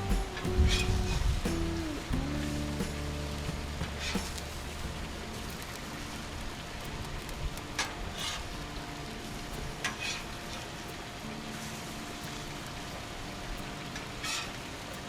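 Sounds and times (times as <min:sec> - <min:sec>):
food sizzling on a griddle: 0:11.2 - 0:14.9.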